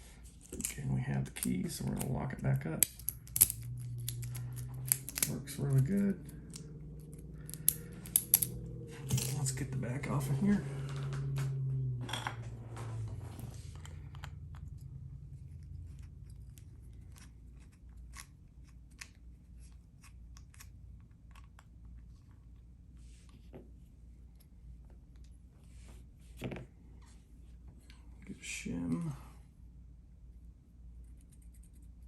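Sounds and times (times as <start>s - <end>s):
metallic clicks of lock tools: 2.8s - 5.3s, 7.5s - 8.6s.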